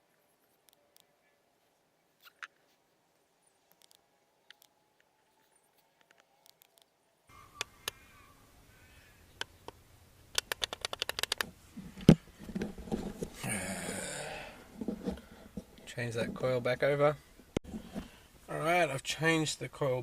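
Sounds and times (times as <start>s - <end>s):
hand tool clicks: 9.4s - 11.5s
handling noise: 10.3s - 16.8s.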